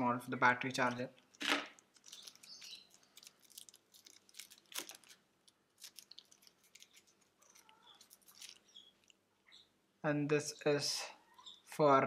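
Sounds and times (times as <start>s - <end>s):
packaging rustling: 0.8s - 9.2s.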